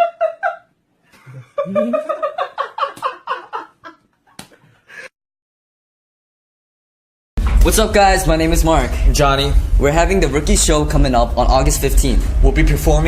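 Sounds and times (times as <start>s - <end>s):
man laughing: 0.0s - 4.0s.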